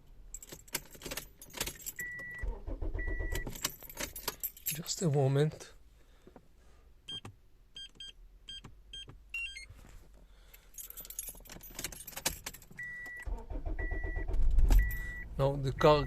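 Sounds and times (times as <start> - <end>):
car keys jangling: 0.3 - 5.1, 10.6 - 15.2
car engine low rumble: 12.6 - 16.0
short electronic beeps: 12.8 - 14.2, 14.8 - 16.0.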